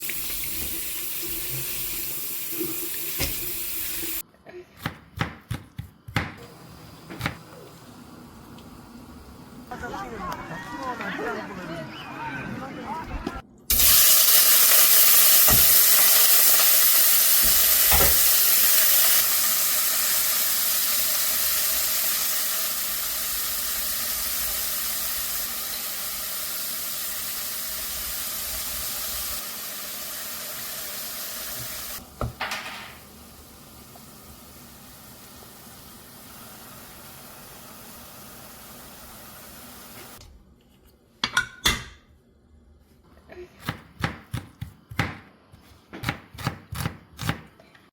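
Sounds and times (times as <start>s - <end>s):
food sizzling in a pan: 0.0s - 4.2s, 13.7s - 40.2s.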